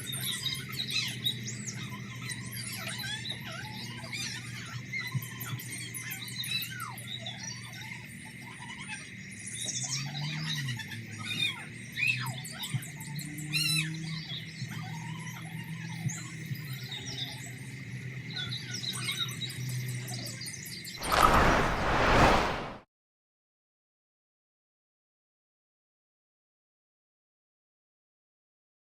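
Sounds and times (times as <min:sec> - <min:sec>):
loud rushing noise: 0:21.0 - 0:22.8.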